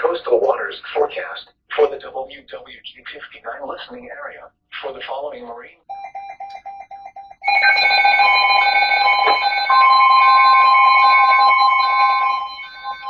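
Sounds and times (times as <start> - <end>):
pulsed electronic beeps: 5.9 - 13.0
repeating high alarm beeps: 5.9 - 13.0
steady alarm tone: 5.9 - 13.0.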